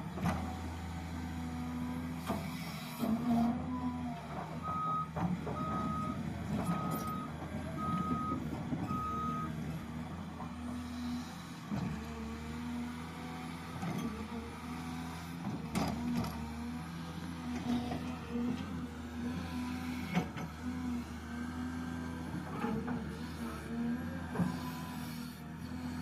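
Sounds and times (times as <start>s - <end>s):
reversing alarm beeps: 3.7s - 9.6s.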